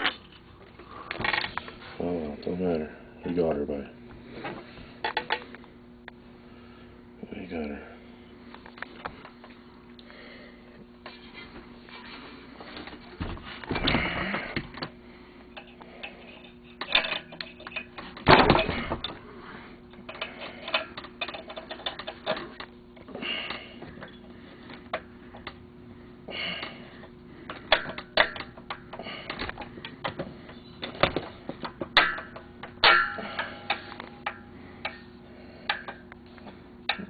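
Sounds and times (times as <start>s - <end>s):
faint steady hum: 0.0s - 37.0s
metal parts and tools clicking: 15.6s - 19.2s, 20.0s - 22.7s
metal clunk: 16.8s - 19.2s.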